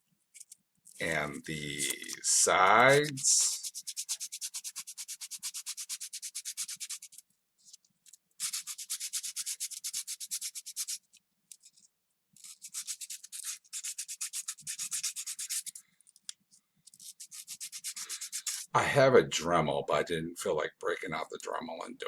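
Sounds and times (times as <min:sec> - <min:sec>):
sandpaper rubbing on plastic knob: 0:01.6 - 0:07.1, 0:08.4 - 0:11.0, 0:12.4 - 0:15.7, 0:17.0 - 0:18.7.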